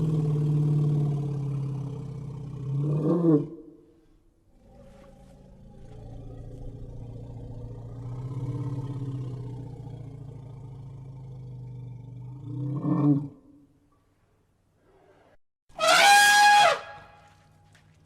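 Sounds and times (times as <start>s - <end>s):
elephant call rising and falling: 14.9s - 17.3s
elephant rumbling call: 15.8s - 17.2s.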